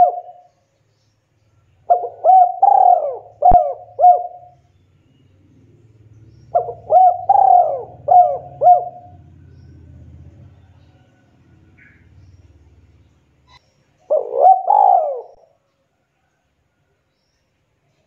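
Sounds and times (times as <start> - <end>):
dove cooing: 0.0 - 0.5, 1.8 - 4.6, 6.5 - 10.0, 14.0 - 15.6.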